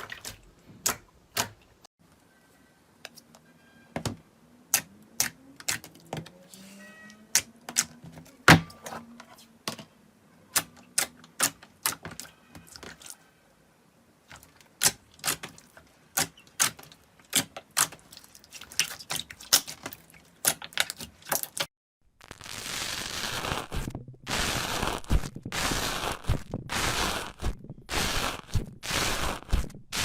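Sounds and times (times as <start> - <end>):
slime crackling: 22.3 - 30.0.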